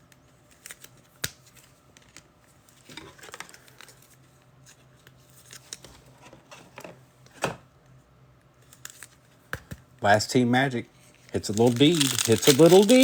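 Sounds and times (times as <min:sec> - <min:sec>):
foil packs rustling and crinkling: 0:11.4 - 0:13.0.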